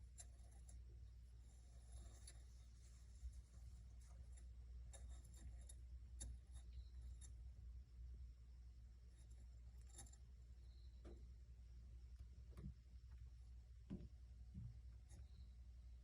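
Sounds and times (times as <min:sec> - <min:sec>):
hamster clicks and scratches: 0:00.0 - 0:07.6, 0:09.0 - 0:11.2.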